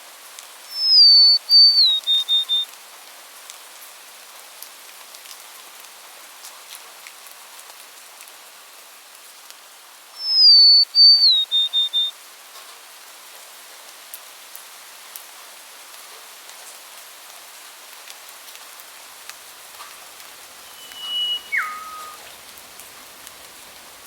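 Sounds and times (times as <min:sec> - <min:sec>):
steady rain-like hiss: 0:00.0 - 0:24.0
songbird whistling: 0:00.7 - 0:02.7, 0:10.2 - 0:12.1, 0:20.5 - 0:22.6.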